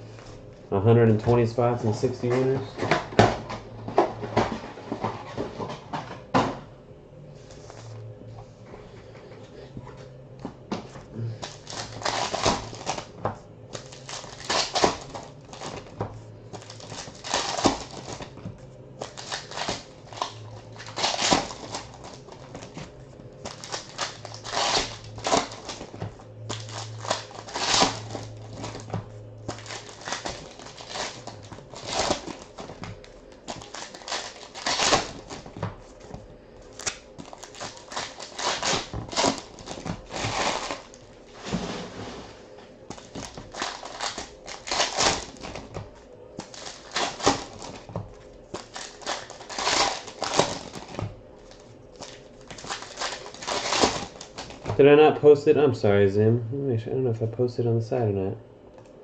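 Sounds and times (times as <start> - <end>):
low hum: 0.0 - 59.0
foil wrappers tearing and crinkling: 11.3 - 18.4, 19.0 - 36.1, 36.7 - 41.4, 42.9 - 45.8, 46.4 - 54.8.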